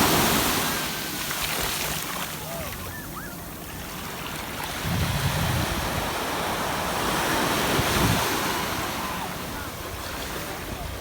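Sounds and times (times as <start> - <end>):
ocean surf washing on beach: 0.0 - 11.0
wind buffeting microphone: 4.7 - 6.8, 7.6 - 8.4.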